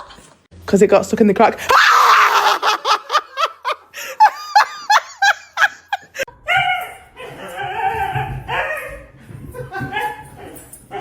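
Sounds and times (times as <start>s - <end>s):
person laughing in bursts: 1.7s - 6.3s.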